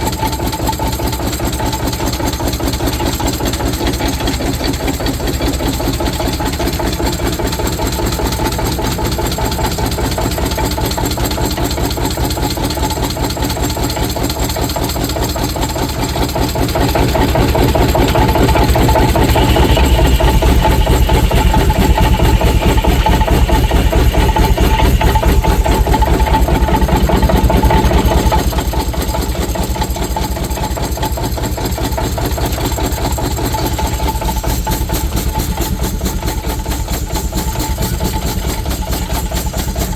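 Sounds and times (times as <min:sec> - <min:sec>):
steam engine exhaust beating: 0:00.0 - 0:39.9
saw whine: 0:16.6 - 0:39.9.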